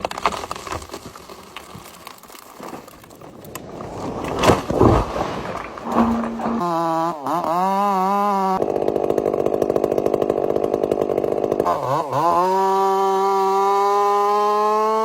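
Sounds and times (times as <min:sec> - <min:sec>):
crackling handling noise: 0:00.0 - 0:07.0
scraping rushes: 0:03.7 - 0:07.1
chainsaw engine running: 0:08.4 - 0:15.0.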